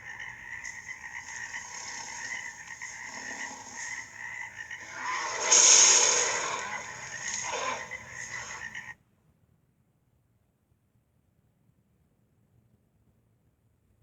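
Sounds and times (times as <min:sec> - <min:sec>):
breathy roar: 0:00.0 - 0:08.8
rattling croak-like trill: 0:00.0 - 0:08.9.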